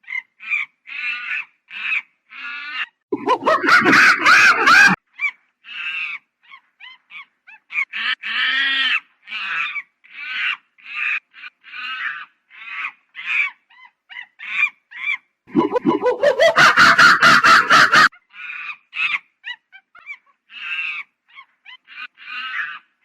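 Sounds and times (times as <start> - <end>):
monkey calling: 3.2 - 5.0, 15.5 - 18.1.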